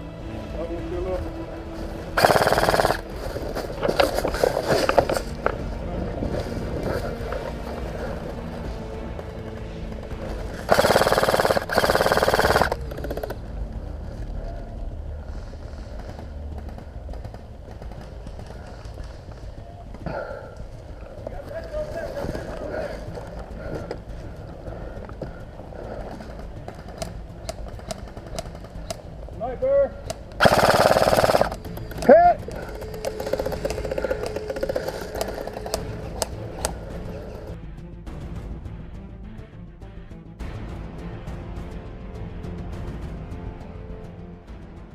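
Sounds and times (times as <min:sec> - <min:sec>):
airsoft rifle full-auto bursts: 0:02.2 - 0:03.2, 0:10.7 - 0:13.4, 0:30.4 - 0:37.1.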